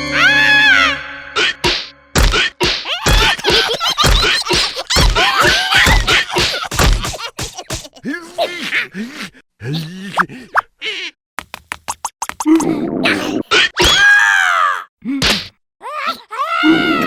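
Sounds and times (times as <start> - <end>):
cartoon thumps and whacks: 1.4 - 8.0, 11.4 - 12.8, 15.2 - 15.6
squeaky cartoon voices: 10.8 - 11.2.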